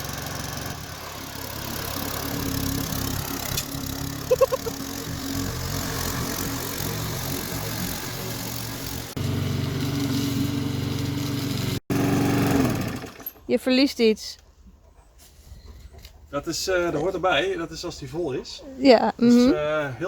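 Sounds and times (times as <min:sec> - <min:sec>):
lawn mower engine running: 0:00.0 - 0:13.4
high-pitched notes: 0:04.0 - 0:08.6.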